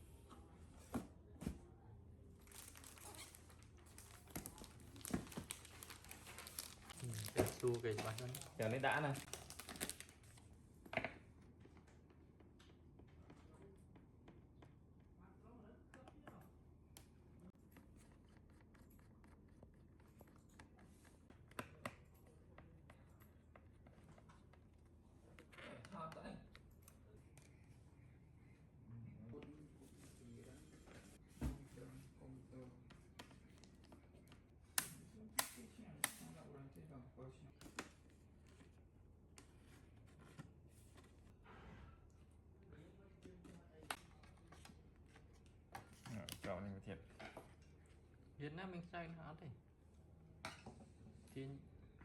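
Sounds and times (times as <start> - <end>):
plastic packaging crinkling: 2.4 - 10.4.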